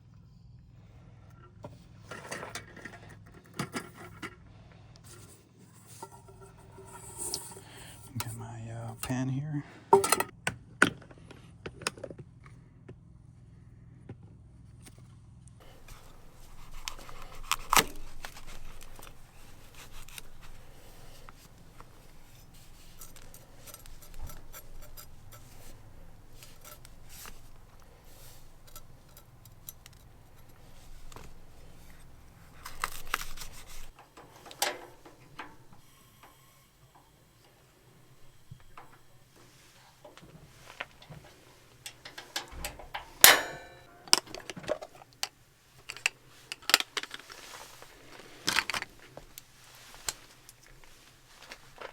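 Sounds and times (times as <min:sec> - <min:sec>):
cooking gear clattering: 0:05.1 - 0:08.4, 0:09.9 - 0:10.4, 0:15.6 - 0:51.9.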